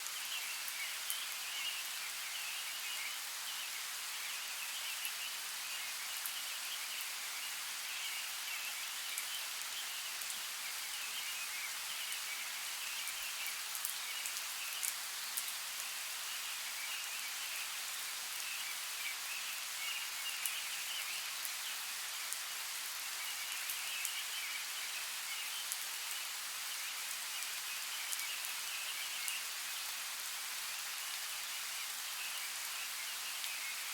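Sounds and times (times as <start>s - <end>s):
rain hiss: 0.0s - 33.9s.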